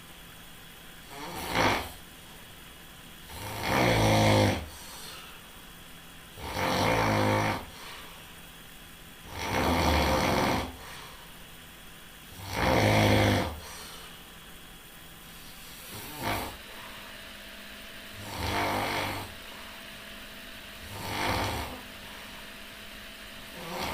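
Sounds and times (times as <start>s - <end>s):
person snoring: 1.1s - 2.0s, 3.2s - 5.2s, 6.4s - 8.1s, 9.2s - 11.2s, 12.3s - 14.0s, 15.6s - 17.1s, 18.1s - 19.8s, 20.8s - 22.6s, 23.4s - 23.9s.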